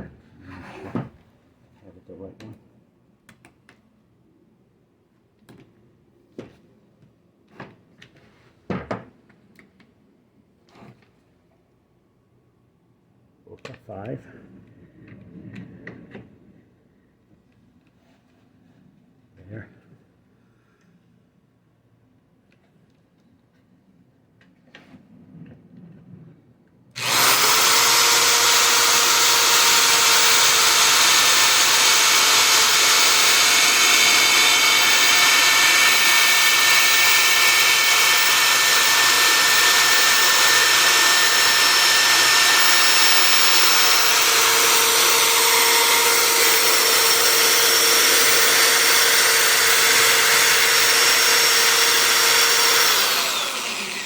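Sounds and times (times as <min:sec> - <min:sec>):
electric drill whining: 0:27.0 - 0:54.0.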